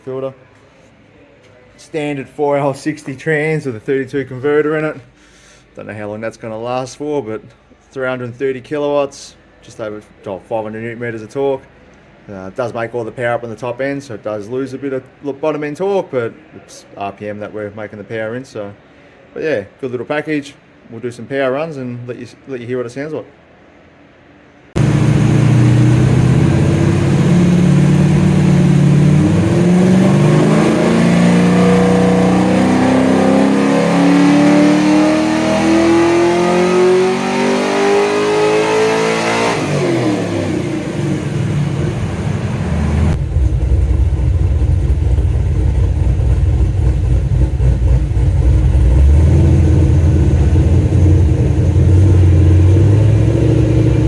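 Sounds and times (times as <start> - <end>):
engine revving up and idling: 24.8 - 54.0.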